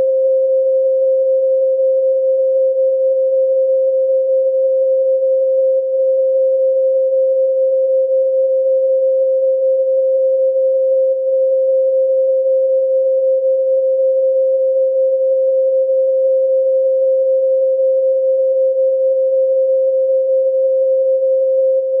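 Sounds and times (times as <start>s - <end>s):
pure sine tone: 0.0s - 22.0s.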